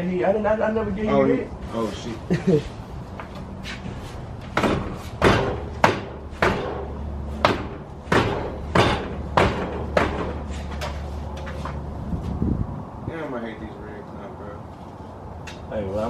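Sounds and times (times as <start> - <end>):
sharp metallic knocks: 4.5 - 11.0.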